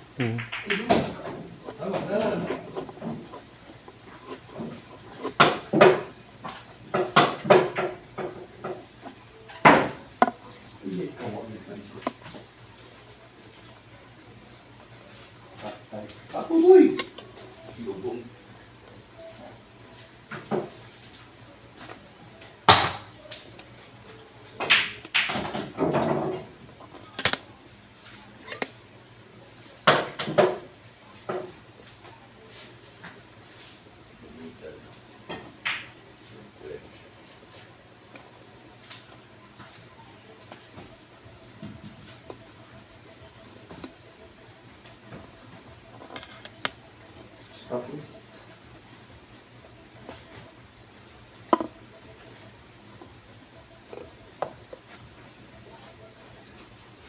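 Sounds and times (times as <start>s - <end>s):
billiard balls clacking: 0.2s - 10.4s, 51.4s - 51.8s.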